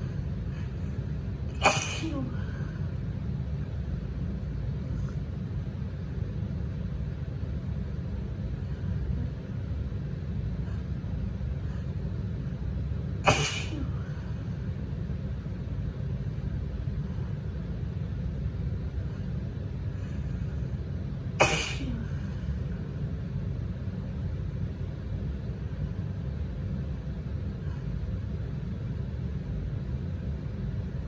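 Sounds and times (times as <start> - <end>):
woman sneezing: 1.6 - 2.6, 13.3 - 14.0, 21.4 - 22.2.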